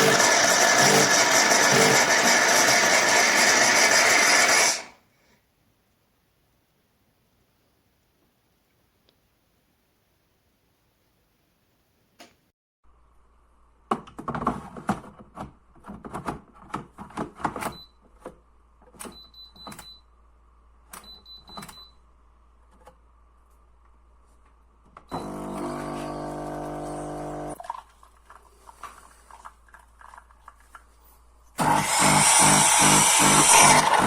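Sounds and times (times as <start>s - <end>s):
espresso machine pump buzz: 0.0s - 4.9s, 25.1s - 27.6s, 31.6s - 34.0s.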